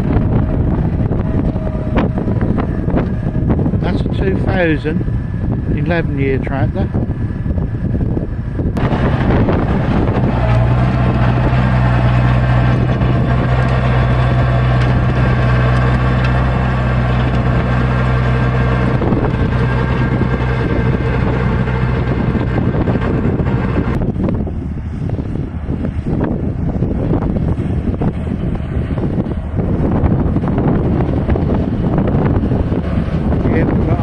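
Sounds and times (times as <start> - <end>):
tractor diesel engine under load: 0.0 - 34.0.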